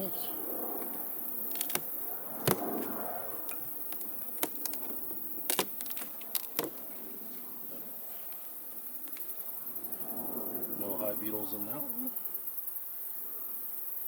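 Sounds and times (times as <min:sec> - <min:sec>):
wooden boxes clicking and knocking: 0:03.5 - 0:06.8.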